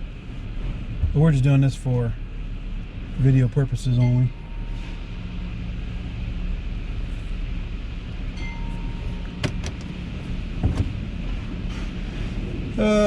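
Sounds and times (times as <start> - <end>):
truck engine running: 0.0 - 13.0
chime-like tone: 4.0 - 5.1, 8.3 - 9.4.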